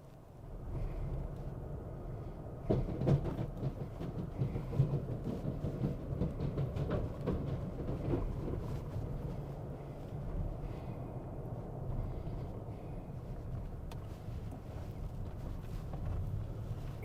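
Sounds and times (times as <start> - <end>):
pickup truck road rumble: 0.4 - 17.0
truck knocks and rattles: 2.2 - 11.0.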